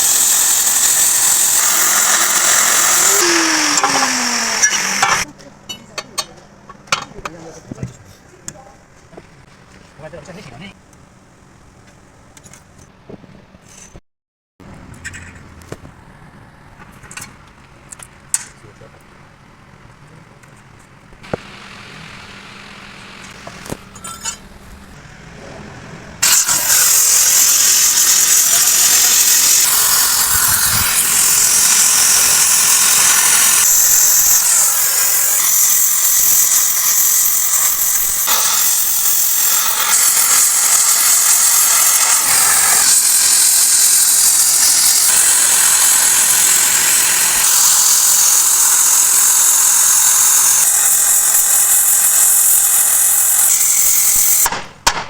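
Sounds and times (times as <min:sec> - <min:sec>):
power tool hissing on steel: 0:00.0 - 0:05.3, 0:21.2 - 0:24.4, 0:26.2 - 0:54.5.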